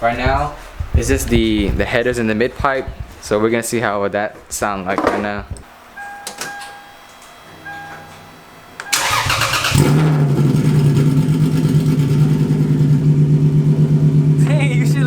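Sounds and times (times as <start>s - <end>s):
short beeps: 6.0s - 6.9s, 7.6s - 8.2s
car engine cranking: 8.8s - 14.5s
loud car engine idling: 9.7s - 15.0s.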